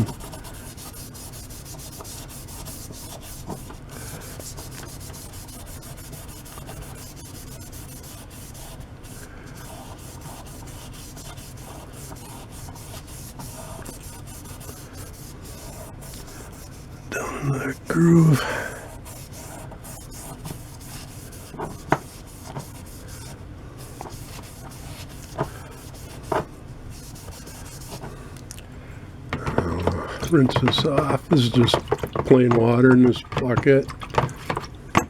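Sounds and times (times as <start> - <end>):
scouring pad scrubbing stone: 0.0 - 16.9, 18.9 - 23.3, 23.9 - 28.1, 29.5 - 34.8.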